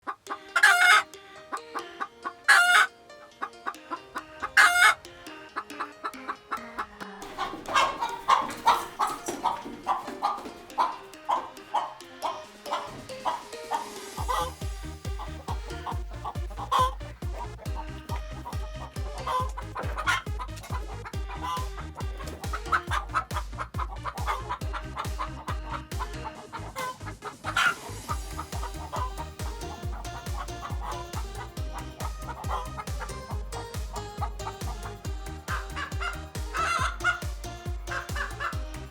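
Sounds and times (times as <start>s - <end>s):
chickens calling loudly: 0.0s - 38.9s
soft chicken clucks: 0.1s - 1.0s, 5.6s - 14.5s, 19.0s - 25.8s, 35.5s - 37.2s, 37.9s - 38.5s
music with steady beat: 7.2s - 38.9s.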